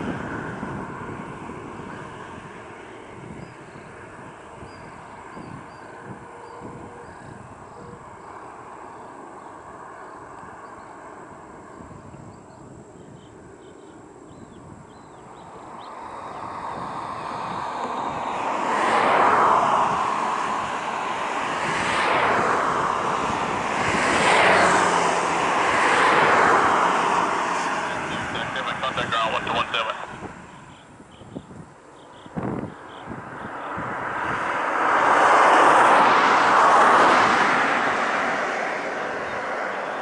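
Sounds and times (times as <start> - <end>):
jet engines roaring: 15.5 - 40.0.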